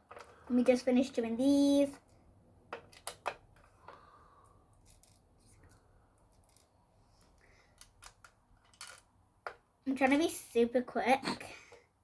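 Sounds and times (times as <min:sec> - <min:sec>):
plastic tiles clicking: 0:02.7 - 0:04.0, 0:07.7 - 0:09.6.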